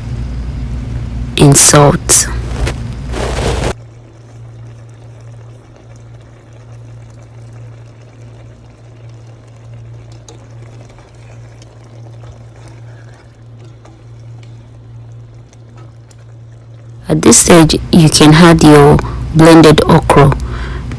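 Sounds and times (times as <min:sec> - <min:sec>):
steady low hum: 0:00.0 - 0:20.9
soup simmering: 0:02.4 - 0:17.0.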